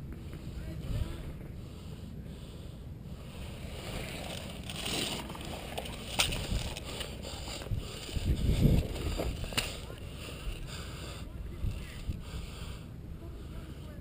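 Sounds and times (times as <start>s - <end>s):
microphone handling rumble: 6.0s - 9.9s
wind on microphone: 6.1s - 10.7s, 11.4s - 12.5s.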